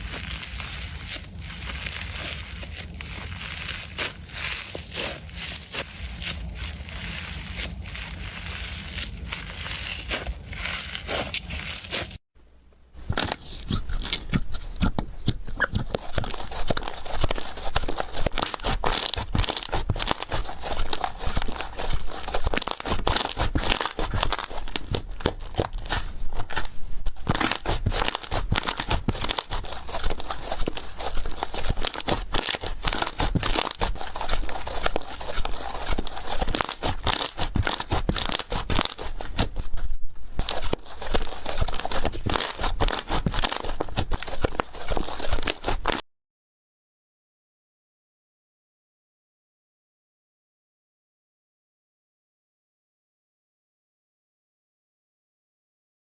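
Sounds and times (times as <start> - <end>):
hands squishing slime: 0.0 - 12.2, 40.6 - 45.8.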